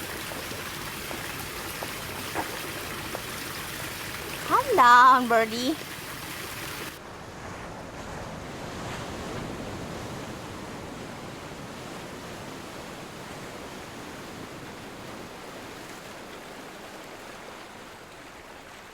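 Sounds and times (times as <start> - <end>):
running water rushing: 0.0 - 7.0.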